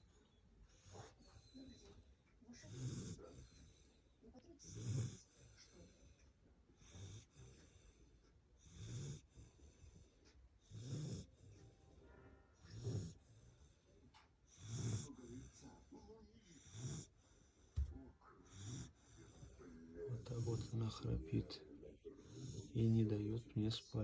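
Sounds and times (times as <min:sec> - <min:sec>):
pet snoring: 0:02.6 - 0:03.9, 0:04.6 - 0:06.2, 0:06.8 - 0:12.0, 0:12.6 - 0:13.9, 0:14.5 - 0:24.0.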